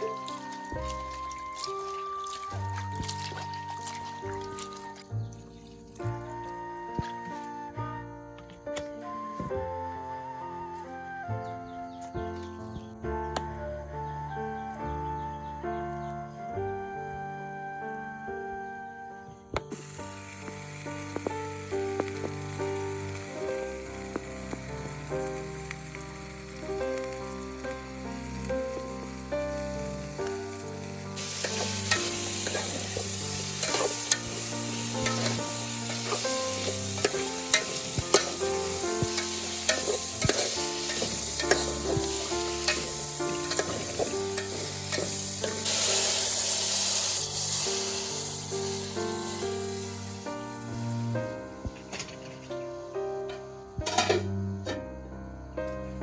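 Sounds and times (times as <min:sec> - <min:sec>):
background music: 0:00.0 - 0:56.0
vegetables sizzling in a pan: 0:19.7 - 0:51.1.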